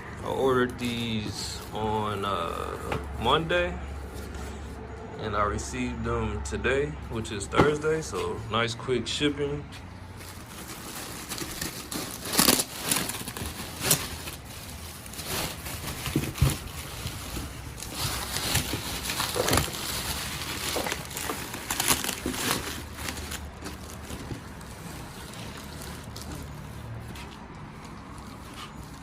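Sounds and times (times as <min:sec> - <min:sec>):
cardboard box crinkling and rustling: 0:10.2 - 0:29.0.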